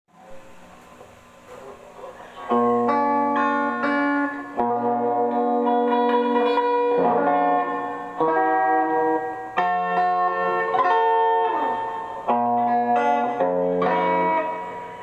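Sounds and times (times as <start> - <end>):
fingerstyle guitar playing: 1.5 - 15.0.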